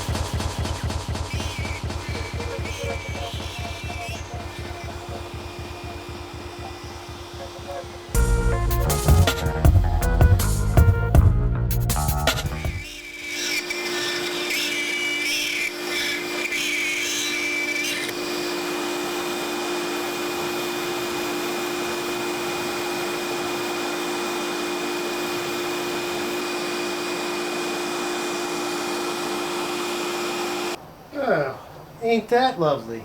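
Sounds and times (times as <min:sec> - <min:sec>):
music: 0:00.0 - 0:12.9
router motor hum and whine: 0:01.2 - 0:08.3, 0:12.6 - 0:30.8.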